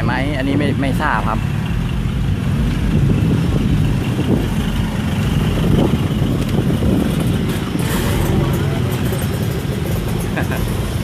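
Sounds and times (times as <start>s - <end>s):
vehicle engines rumbling: 0.0s - 11.0s.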